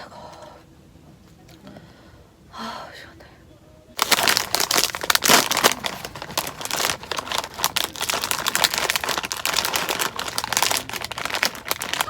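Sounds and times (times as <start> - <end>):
close crinkling and crunching: 4.0 - 12.0.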